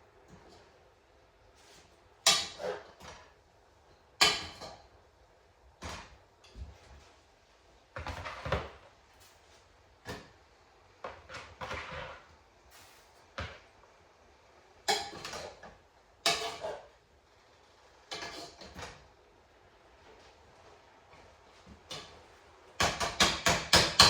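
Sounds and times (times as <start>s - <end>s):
cookware knocking and clattering: 4.2s - 4.9s.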